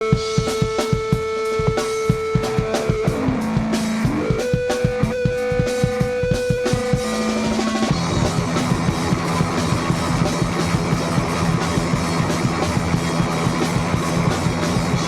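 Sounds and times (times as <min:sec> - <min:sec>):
drum kit beat: 0:00.0 - 0:15.0
electric guitar: 0:00.0 - 0:15.0.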